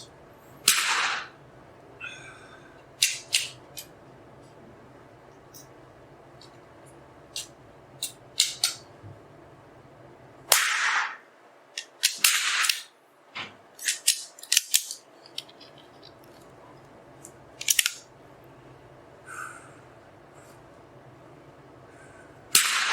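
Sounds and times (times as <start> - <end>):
rifle shots: 0.7 - 1.3, 10.5 - 11.2, 12.0 - 12.9, 22.5 - 22.9.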